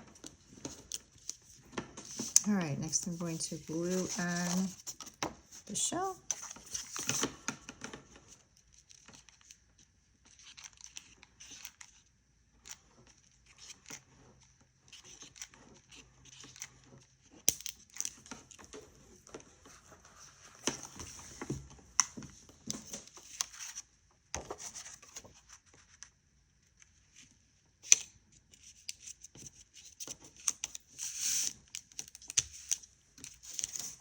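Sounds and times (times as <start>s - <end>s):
paper rustling: 0.2s - 7.4s, 32.2s - 34.0s.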